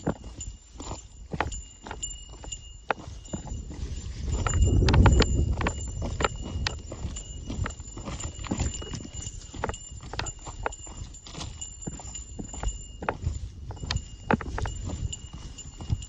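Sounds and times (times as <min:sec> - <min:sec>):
boots stepping on stone: 0:00.0 - 0:16.0
wind rumble on microphone: 0:00.1 - 0:16.0.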